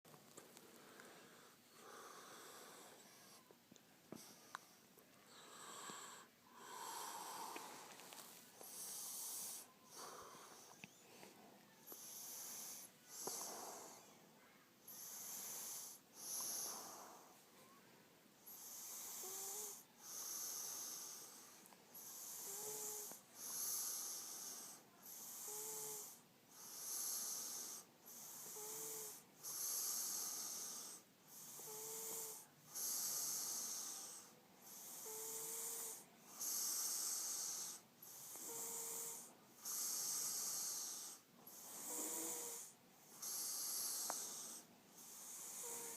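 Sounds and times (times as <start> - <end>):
man snoring: 5.4 - 7.8, 11.9 - 14.0, 18.5 - 21.4, 22.0 - 45.9.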